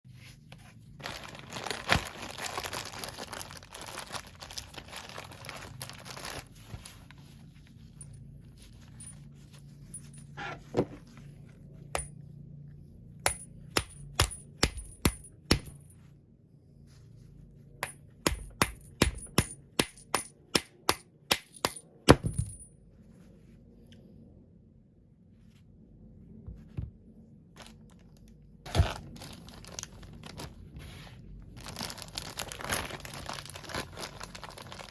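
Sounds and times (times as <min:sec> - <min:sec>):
rustling of small parts: 0:27.6 - 0:34.9.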